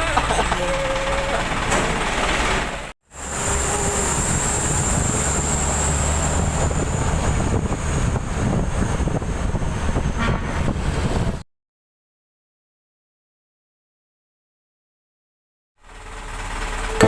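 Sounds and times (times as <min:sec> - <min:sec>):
truck engine rumbling: 0:00.0 - 0:11.4, 0:15.8 - 0:17.0.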